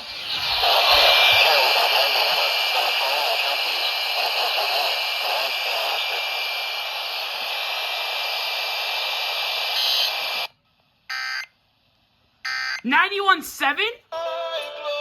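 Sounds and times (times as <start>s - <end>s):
radio static hiss: 0.0s - 10.5s
faint broadcast voice: 0.6s - 7.8s.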